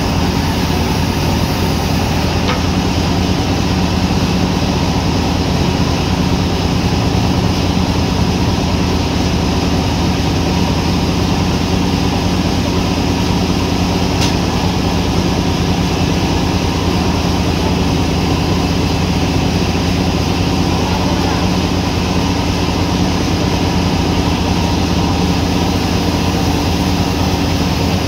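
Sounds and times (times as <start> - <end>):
sawmill machinery humming: 0.0 - 28.0
sharp click: 14.2 - 14.5.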